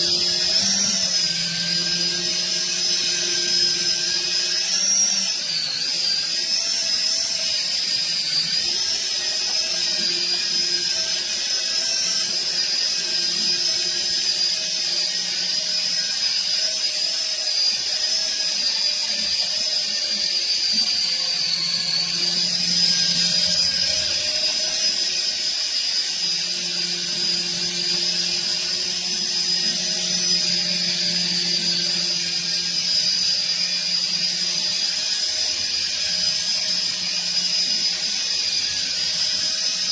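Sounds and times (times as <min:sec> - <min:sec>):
toy helicopter motors whining: 0:00.0 - 0:39.9.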